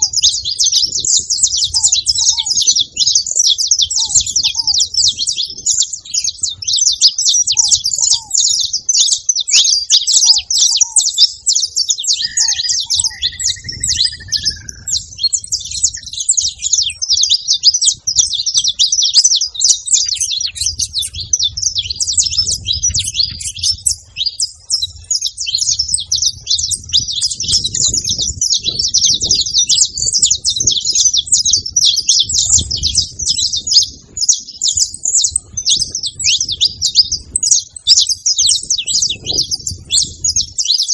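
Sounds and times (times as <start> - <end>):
finches chirping: 0.0 - 40.9
lower drawn-out bird notes: 9.5 - 17.4.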